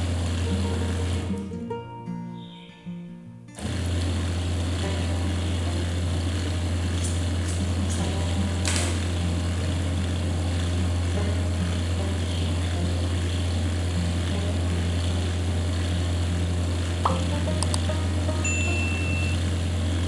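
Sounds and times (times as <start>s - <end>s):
electric motor humming: 0.0s - 1.5s, 3.6s - 20.0s
click: 17.0s - 17.9s.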